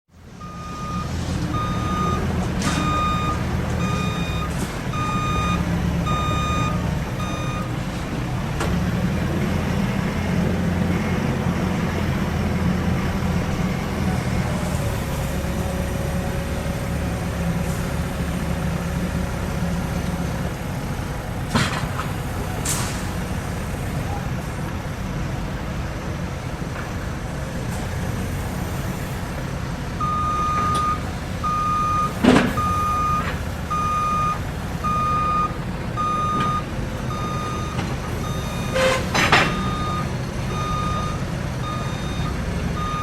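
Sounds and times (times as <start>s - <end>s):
diesel engine running: 0.1s - 43.0s
truck reversing beeper: 0.4s - 7.9s, 8.6s - 20.8s, 30.0s - 43.0s.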